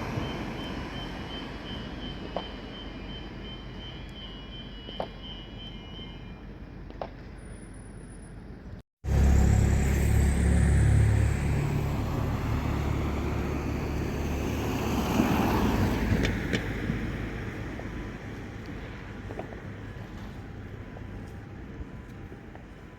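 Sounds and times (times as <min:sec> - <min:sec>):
fire engine diesel engine running: 0:09.0 - 0:14.9, 0:16.5 - 0:22.9.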